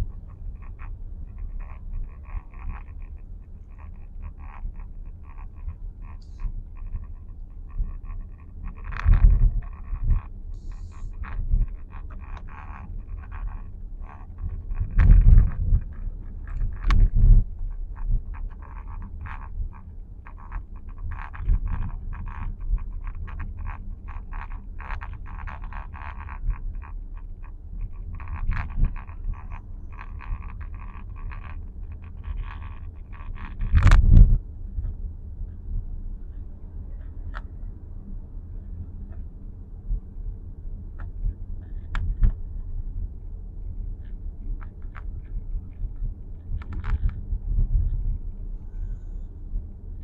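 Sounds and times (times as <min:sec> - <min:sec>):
dashboard rattling and buzzing: 0:00.0 - 0:34.4
steady low rumble: 0:00.0 - 0:50.0.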